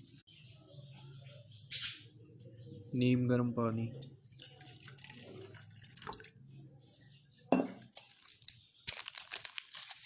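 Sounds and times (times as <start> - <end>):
water pouring into container: 4.0 - 6.3.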